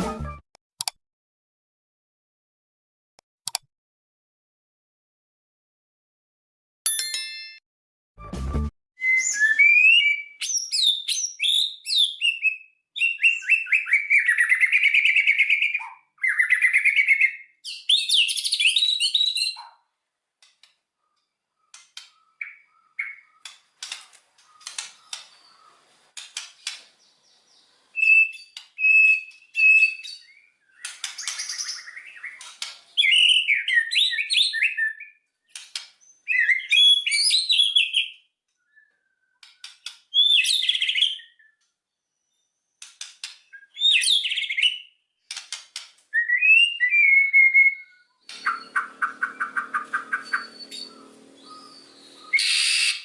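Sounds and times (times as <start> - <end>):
bird singing whistles and trills: 9.0 - 19.7, 28.0 - 35.2, 36.1 - 39.5, 40.1 - 41.6, 43.5 - 44.9, 46.1 - 53.0.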